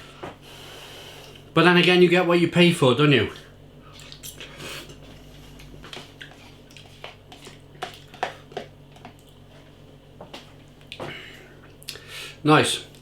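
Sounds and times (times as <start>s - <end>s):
low steady hum: 0.0s - 13.0s
person chewing and slurping: 3.9s - 9.6s.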